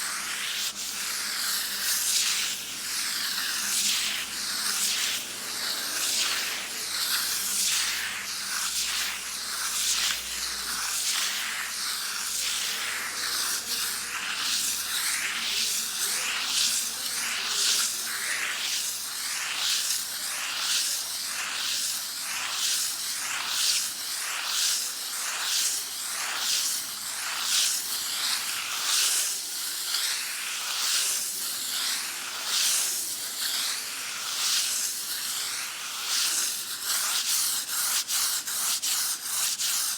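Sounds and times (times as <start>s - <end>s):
sandpaper scraping a wall: 0.0s - 39.9s.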